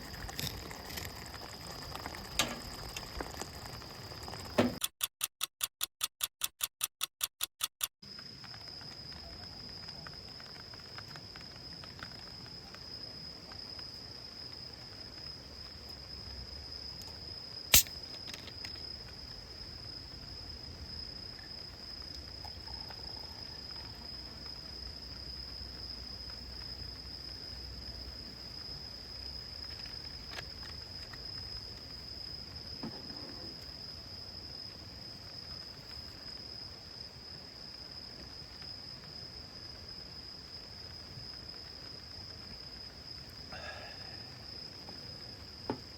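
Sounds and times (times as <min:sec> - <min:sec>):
sharp click: 0:04.6 - 0:08.0, 0:17.7 - 0:18.0
insect trilling: 0:43.3 - 0:45.5.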